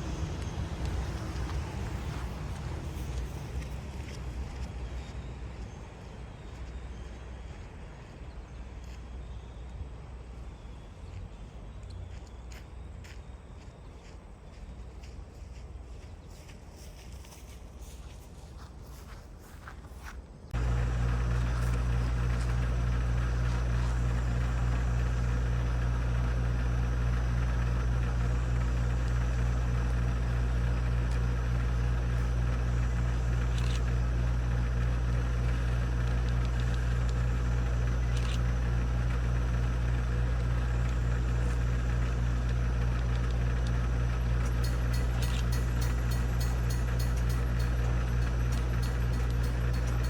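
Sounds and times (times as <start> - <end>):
engine idling: 20.6 - 50.0.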